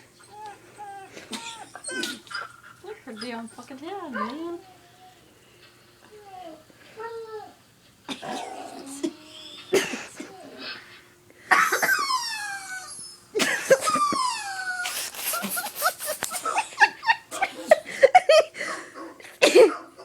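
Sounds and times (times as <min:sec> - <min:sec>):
dogs barking and yelping: 0:00.0 - 0:05.3, 0:11.5 - 0:20.0.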